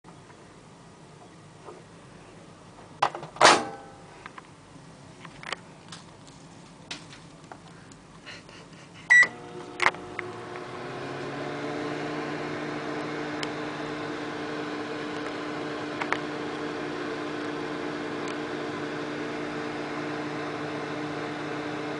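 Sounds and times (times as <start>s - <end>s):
microwave oven humming: 9.0s - 21.9s
keypad beep: 9.1s - 9.3s.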